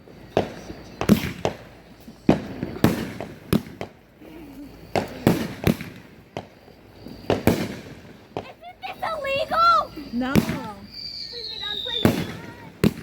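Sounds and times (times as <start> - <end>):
fireworks bangs and cracks: 0.0 - 13.0.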